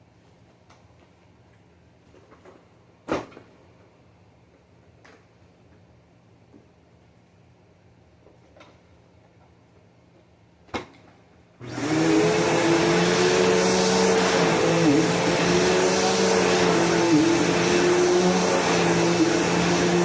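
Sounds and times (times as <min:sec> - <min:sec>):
vacuum cleaner motor whine: 0:11.6 - 0:20.0.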